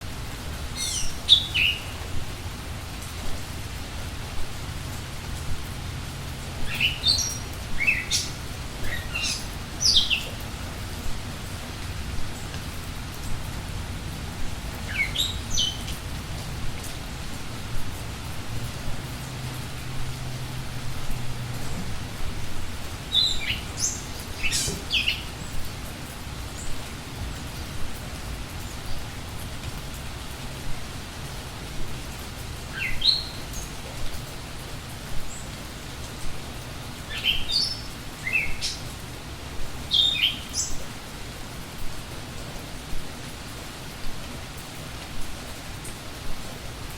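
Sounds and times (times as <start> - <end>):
rain hissing: 0.0 - 46.9
bird chirping: 0.8 - 2.0, 6.7 - 10.4, 14.9 - 16.0, 23.1 - 25.6, 39.9 - 40.8.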